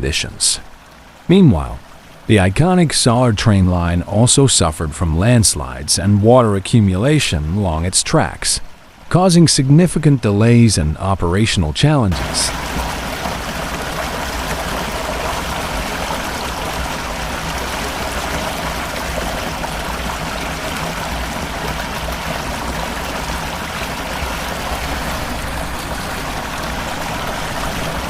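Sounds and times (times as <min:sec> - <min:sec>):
floodwater rushing: 0:00.0 - 0:28.0.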